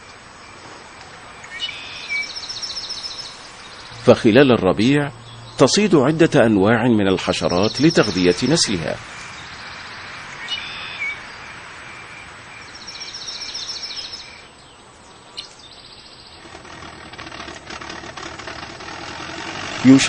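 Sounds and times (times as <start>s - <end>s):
outdoor ambience hiss: 0.0s - 20.0s
small birds chirping: 0.0s - 20.0s
rapid high bird trill: 1.4s - 14.6s.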